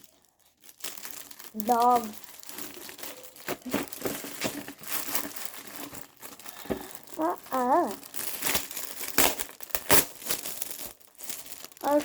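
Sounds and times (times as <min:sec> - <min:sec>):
packaging crinkling and rustling: 0:00.0 - 0:12.0
person humming: 0:06.7 - 0:08.0.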